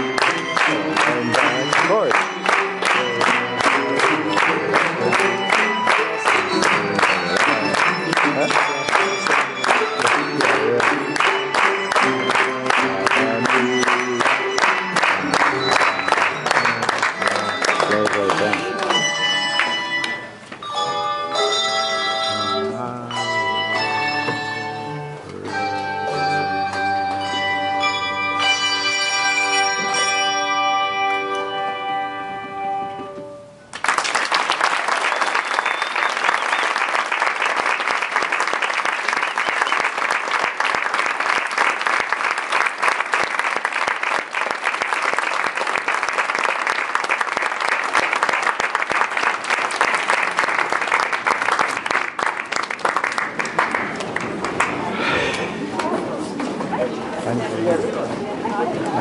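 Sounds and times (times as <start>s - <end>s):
audience applause: 0.0s - 20.2s, 33.7s - 55.9s.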